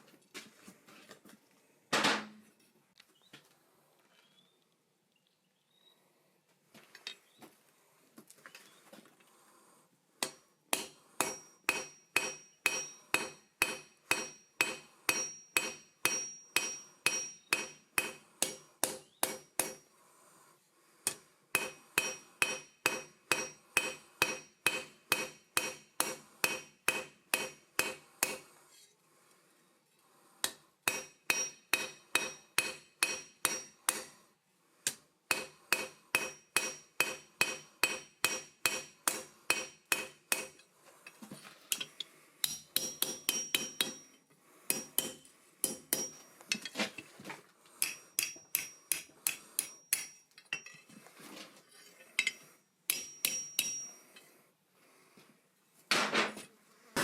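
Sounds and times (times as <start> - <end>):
hammer striking anvil: 10.2 - 19.8, 21.1 - 28.4, 30.4 - 34.2, 35.3 - 40.6, 41.7 - 46.7, 47.8 - 50.8, 52.2 - 54.0.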